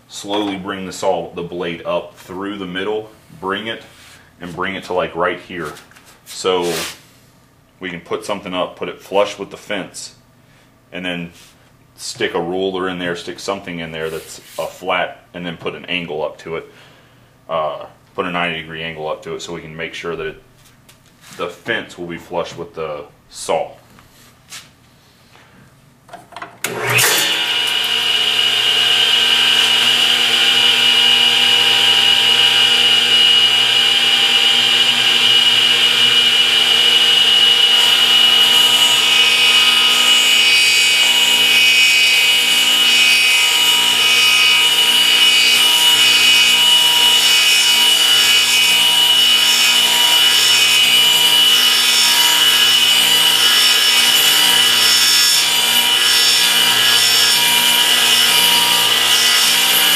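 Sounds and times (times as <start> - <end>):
table saw whining: 26.6 - 59.9.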